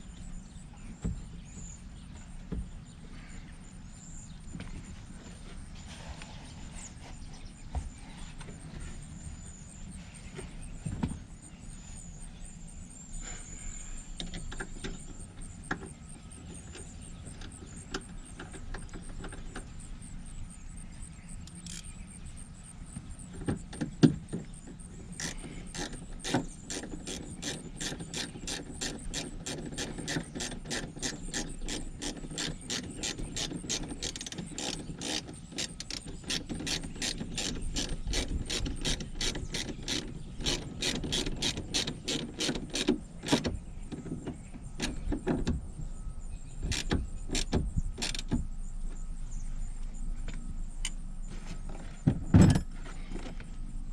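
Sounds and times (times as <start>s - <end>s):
hand ratchet clicking: 21.5s - 21.9s, 25.1s - 43.5s, 46.7s - 48.4s
handling clicks and knocks: 23.3s - 45.6s, 46.6s - 49.0s.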